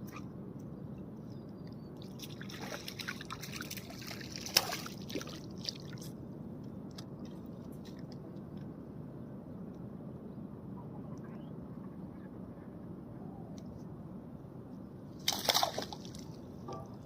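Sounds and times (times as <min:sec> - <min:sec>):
water splashing and trickling: 0:02.0 - 0:06.2, 0:15.2 - 0:17.0.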